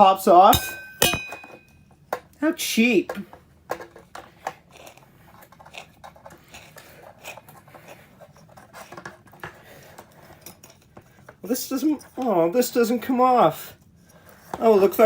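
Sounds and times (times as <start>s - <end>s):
plastic parts clicking and scraping: 3.1s - 12.5s.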